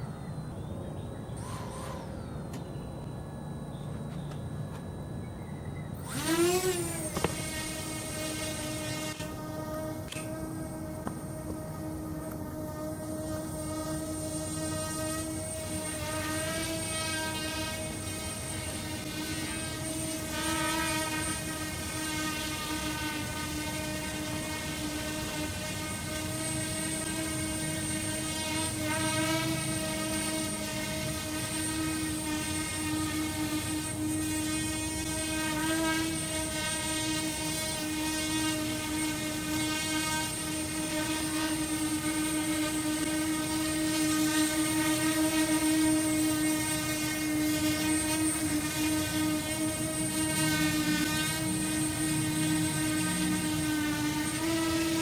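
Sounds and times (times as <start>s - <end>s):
drone propeller whine: 0.0s - 55.0s.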